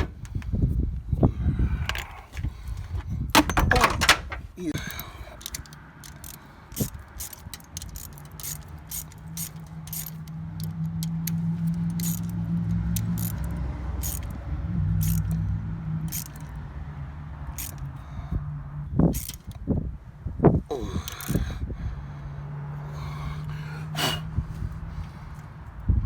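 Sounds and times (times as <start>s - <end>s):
metal tools clicking and scraping: 1.8s - 14.4s, 15.0s - 16.6s, 17.4s - 18.0s, 19.1s - 19.6s, 21.0s - 21.4s.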